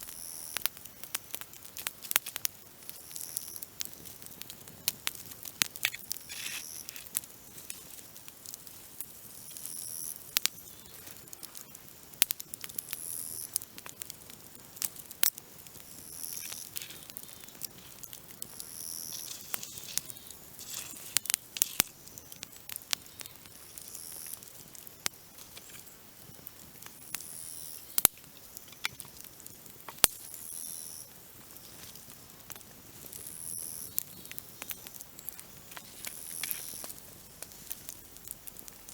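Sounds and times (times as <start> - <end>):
campfire crackling and popping: 0.0 - 38.9
grasshopper buzzing: 5.8 - 7.2, 15.7 - 22.5, 36.0 - 36.9.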